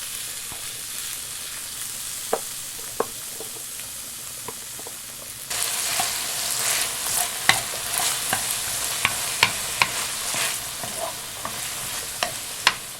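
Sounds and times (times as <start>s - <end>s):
food sizzling in a pan: 0.0s - 12.9s
utensil knocking against pan: 7.4s - 12.9s.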